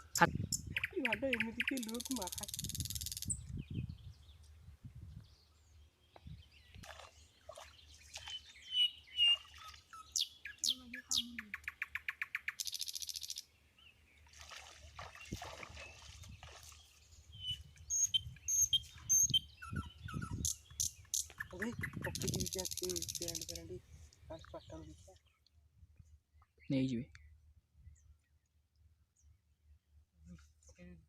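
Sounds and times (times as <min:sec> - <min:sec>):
birds chirping: 0:00.0 - 0:04.6, 0:05.2 - 0:25.4
rapid bird trill: 0:08.7 - 0:13.5.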